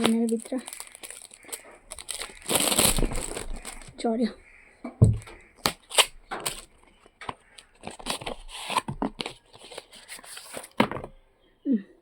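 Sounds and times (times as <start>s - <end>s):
packaging crinkling and tearing: 0.0s - 4.0s, 5.5s - 10.8s.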